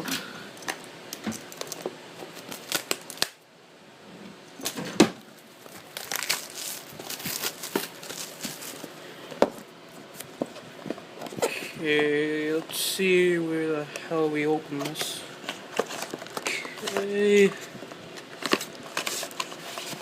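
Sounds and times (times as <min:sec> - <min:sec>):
wrapping crinkling and tearing: 0:01.4 - 0:03.4, 0:05.4 - 0:09.0, 0:14.8 - 0:20.0.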